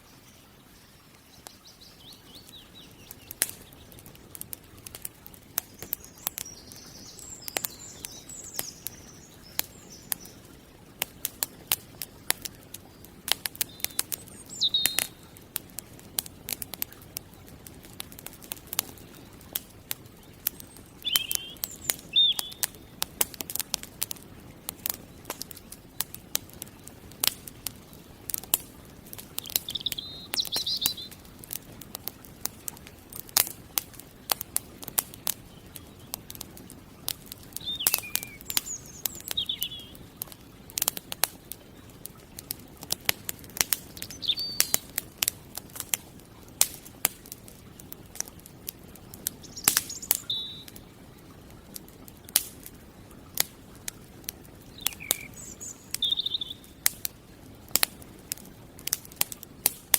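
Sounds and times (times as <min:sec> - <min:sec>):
bird chirping: 0:00.0 - 0:04.0, 0:05.6 - 0:10.4, 0:13.6 - 0:15.2, 0:20.3 - 0:22.8, 0:29.4 - 0:31.2, 0:37.6 - 0:40.0, 0:43.9 - 0:44.8, 0:49.4 - 0:50.7, 0:54.7 - 0:56.8
campfire crackling and popping: 0:00.0 - 0:59.9.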